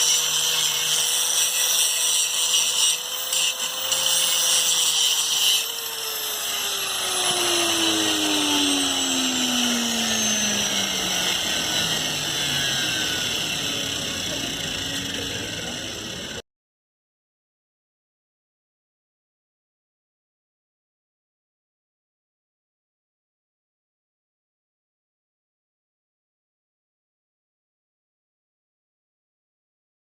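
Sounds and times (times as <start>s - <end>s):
power tool motor winding down: 0.0s - 16.4s.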